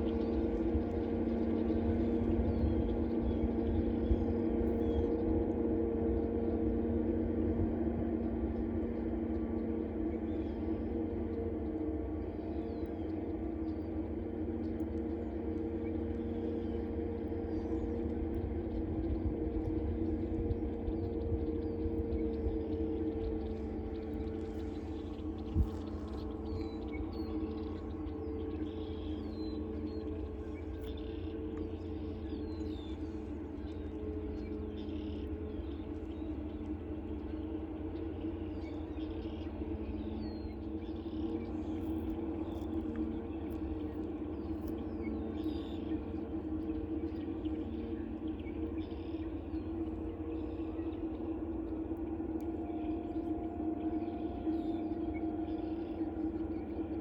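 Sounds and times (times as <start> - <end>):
mechanical hum: 0.0 - 57.0
faint bird chirps: 21.0 - 51.8.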